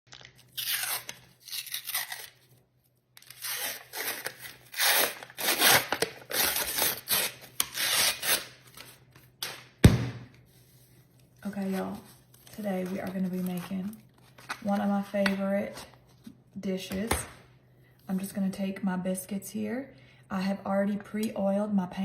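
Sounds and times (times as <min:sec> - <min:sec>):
short tearing rips: 0:00.1 - 0:02.5, 0:03.2 - 0:08.6.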